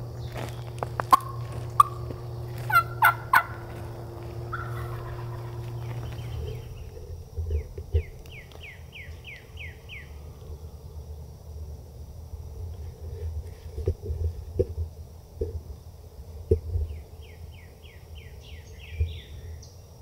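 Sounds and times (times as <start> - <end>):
low steady hum: 0.0 - 20.0
wild turkey gobbling: 0.2 - 6.9.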